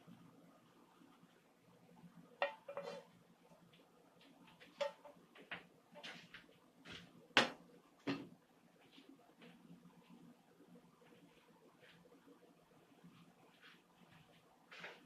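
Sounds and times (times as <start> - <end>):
metal utensils knocking on dishes: 2.4 - 3.1, 4.8 - 5.2.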